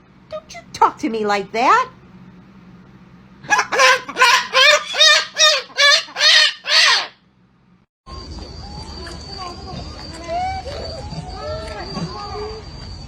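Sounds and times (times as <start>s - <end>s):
bird squawking: 3.5s - 7.2s.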